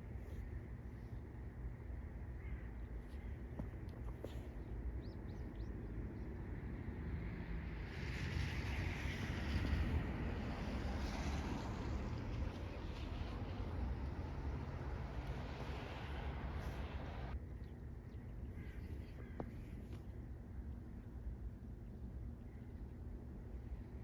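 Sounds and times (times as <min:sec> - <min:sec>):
faint short bird calls: 0:02.4 - 0:05.6, 0:18.2 - 0:20.1.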